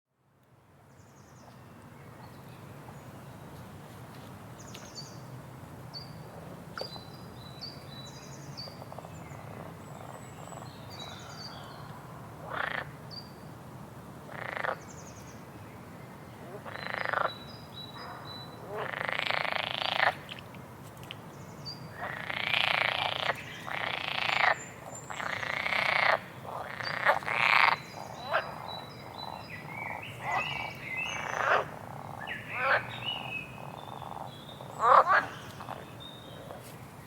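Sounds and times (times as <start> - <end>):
frogs croaking: 8.6 - 13.0, 14.3 - 14.9, 16.4 - 20.4, 21.9 - 36.6.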